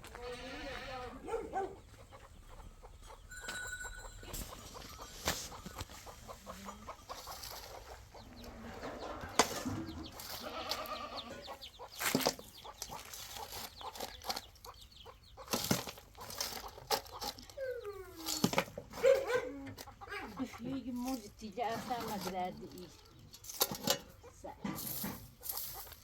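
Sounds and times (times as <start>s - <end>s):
chickens clucking: 0.0s - 26.0s
sharp knocks and clatter: 8.5s - 10.4s.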